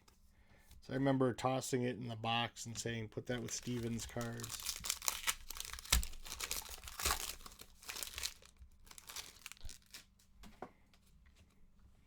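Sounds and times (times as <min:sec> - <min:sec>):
cards rustling and clicking: 0:03.3 - 0:10.2
foil wrapper crinkling and tearing: 0:03.3 - 0:10.2.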